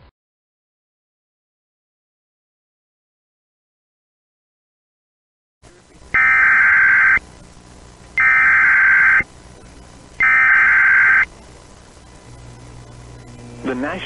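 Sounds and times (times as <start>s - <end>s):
faint radio hiss: 5.6s - 14.0s
buzzing data tones: 6.1s - 14.0s.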